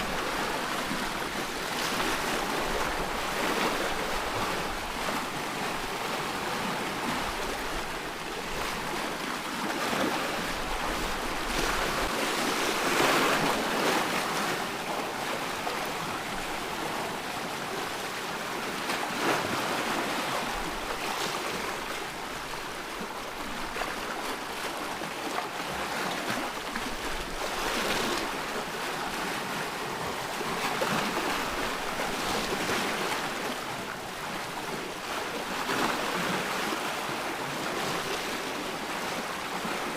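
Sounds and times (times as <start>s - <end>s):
ocean surf washing: 0.0s - 39.9s.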